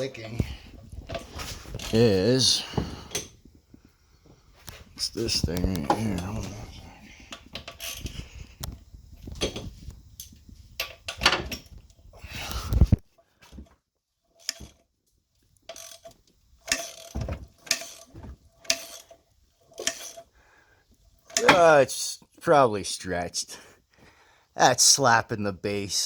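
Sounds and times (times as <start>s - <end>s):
timing chain clicking and clanking: 14.3s - 14.8s, 15.6s - 20.3s.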